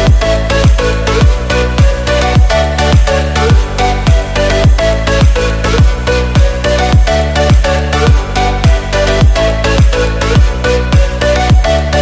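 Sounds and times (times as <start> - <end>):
deep kick drum: 0.0 - 11.9.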